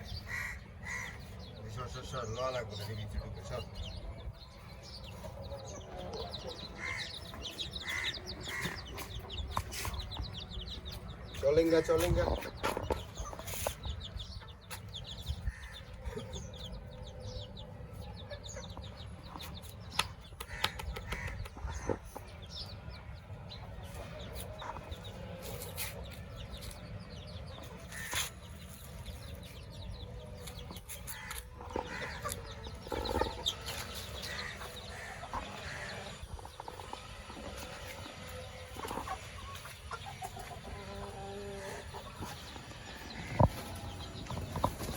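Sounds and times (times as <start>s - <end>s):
chickens clucking: 0.0s - 44.9s.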